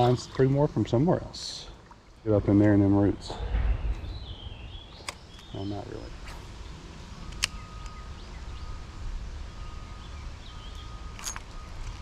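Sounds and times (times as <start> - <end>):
bird chirp: 3.0 - 12.0
low wind rumble on microphone: 3.2 - 12.0.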